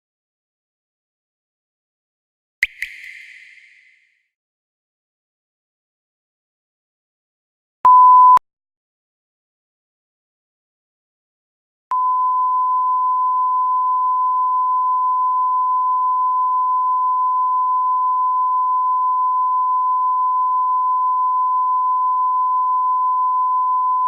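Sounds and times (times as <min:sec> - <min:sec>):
censor bleep tone: 0:07.9 - 0:08.4, 0:11.9 - 0:24.0.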